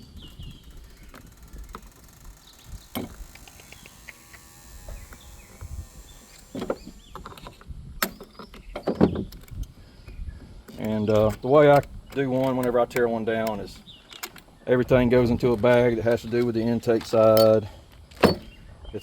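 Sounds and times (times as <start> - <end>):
plastic and metal parts knocking: 0.0 - 4.2.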